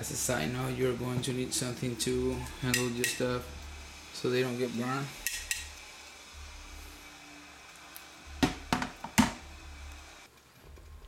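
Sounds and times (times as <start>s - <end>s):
metal utensil clinking on pot: 5.2s - 5.7s.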